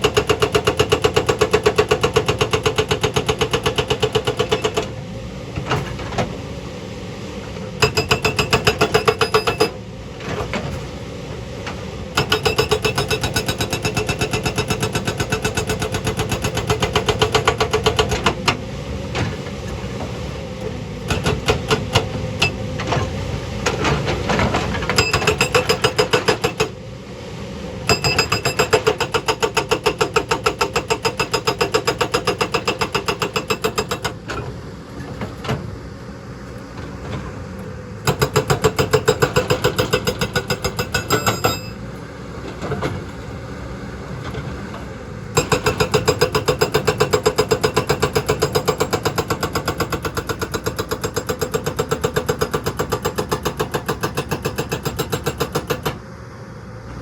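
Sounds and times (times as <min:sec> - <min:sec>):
hydraulic rock breaker hammering: 0:00.0 - 0:05.0, 0:07.8 - 0:10.7, 0:12.1 - 0:19.8, 0:20.6 - 0:26.8, 0:27.9 - 0:34.4, 0:38.0 - 0:41.8, 0:45.3 - 0:56.0
diesel engine running: 0:09.6 - 0:52.1.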